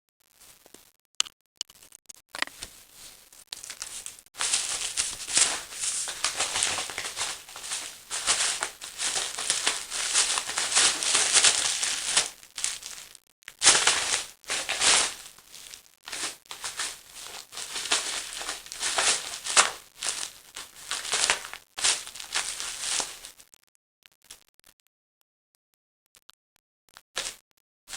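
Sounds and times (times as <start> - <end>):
crinkling bubble wrap and paper: 2.5 - 23.5, 27.2 - 27.4.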